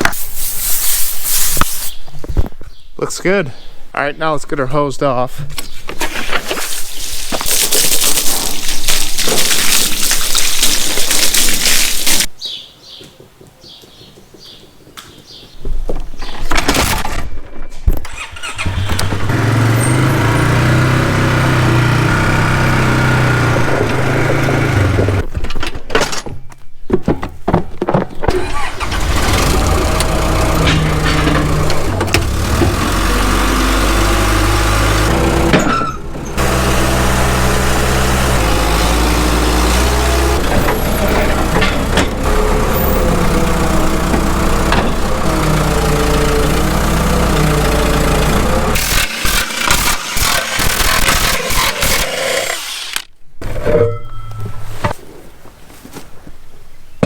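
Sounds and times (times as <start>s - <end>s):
engine running: 18.1s - 25.3s, 28.4s - 53.1s.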